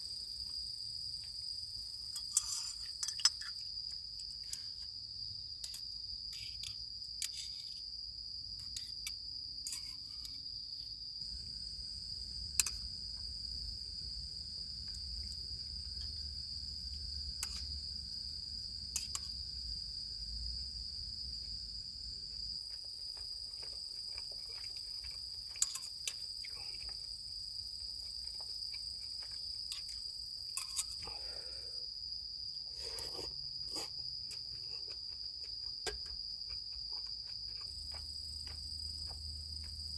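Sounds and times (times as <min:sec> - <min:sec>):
crickets chirring: 0:00.0 - 0:39.9
small clicks and knocks: 0:22.6 - 0:27.1, 0:34.3 - 0:39.8.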